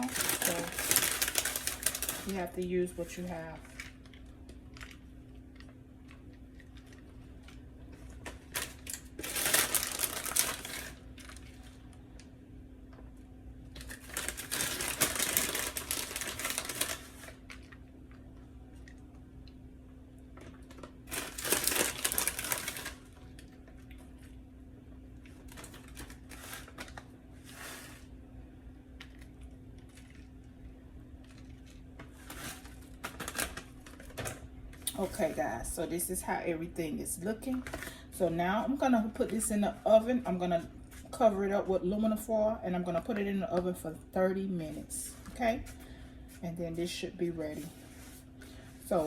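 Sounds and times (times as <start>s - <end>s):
plastic bag crinkling: 0.0s - 12.3s, 13.7s - 17.8s, 20.4s - 24.3s, 25.2s - 28.1s, 29.0s - 30.4s, 31.2s - 35.7s
steady low hum: 0.0s - 49.0s.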